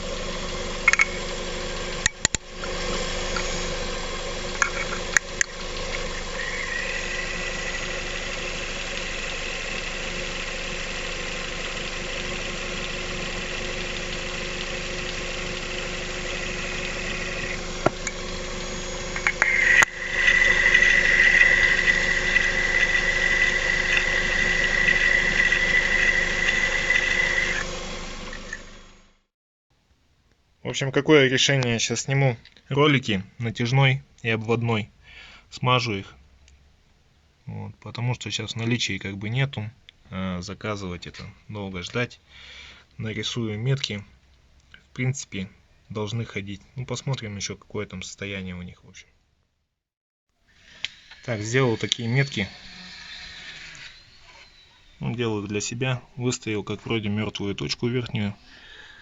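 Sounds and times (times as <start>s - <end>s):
car engine idling: 0.0s - 28.8s
high whistle from belt rollers: 17.0s - 27.8s, 50.6s - 55.5s.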